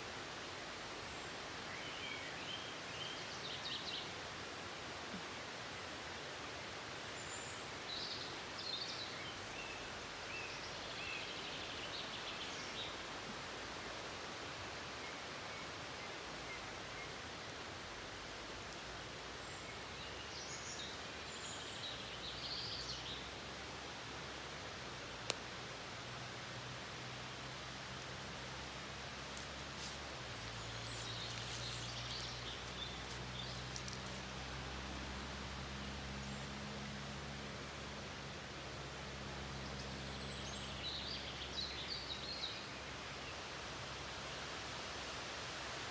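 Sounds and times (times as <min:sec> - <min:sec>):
small birds chirping: 0:28.6 - 0:37.3.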